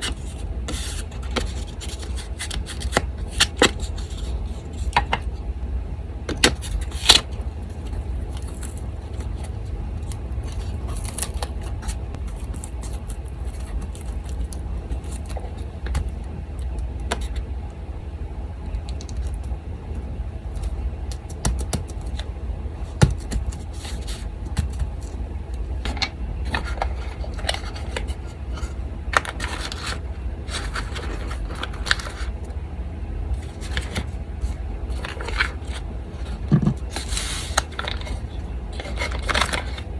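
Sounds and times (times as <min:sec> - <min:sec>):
paper rustling: 0:00.0 - 0:05.0, 0:06.6 - 0:16.2, 0:22.9 - 0:25.2, 0:25.9 - 0:32.4, 0:33.4 - 0:39.8
electric fan humming: 0:00.0 - 0:39.9.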